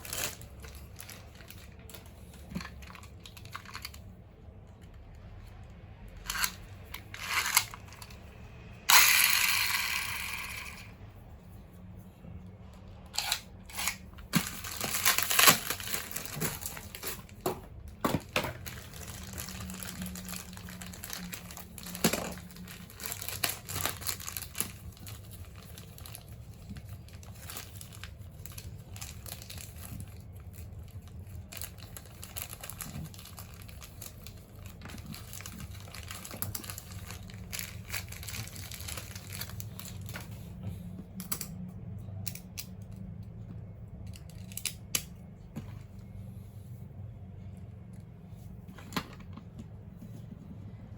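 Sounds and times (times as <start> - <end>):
plastic packaging crinkling and tearing: 0.0 - 5.4, 13.1 - 40.6.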